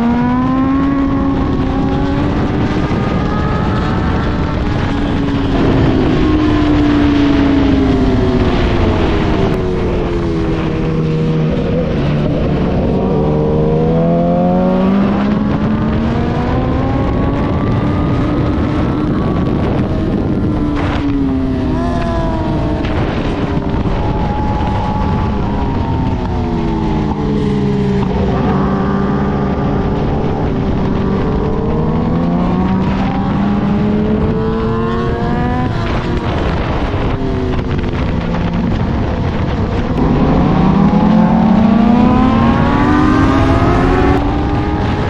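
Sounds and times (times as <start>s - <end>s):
sport bike engine at track speed: 0.0s - 45.0s.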